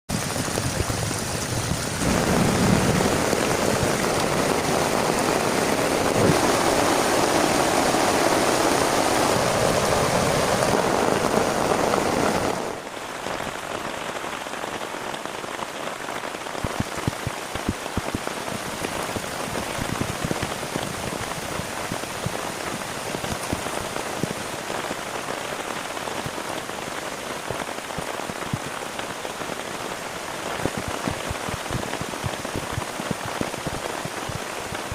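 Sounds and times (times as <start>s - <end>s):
heavy rain falling: 0.1s - 34.9s
raindrops striking a surface: 0.1s - 34.9s.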